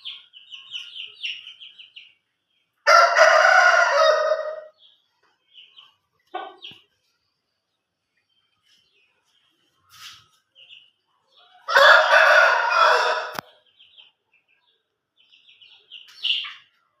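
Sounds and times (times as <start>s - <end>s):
rooster crowing: 2.9s - 4.7s, 11.7s - 13.4s.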